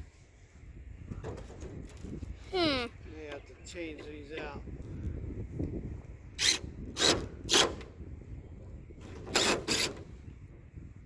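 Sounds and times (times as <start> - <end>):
power drill driving bolts: 6.4 - 7.9, 9.0 - 10.1.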